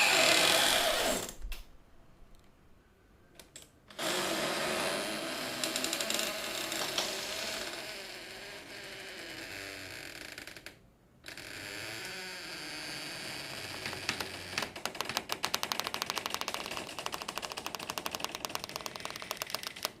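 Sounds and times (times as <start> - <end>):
door creaking: 0.0 - 1.7, 3.9 - 15.4
fast rattling clicks: 14.6 - 20.0.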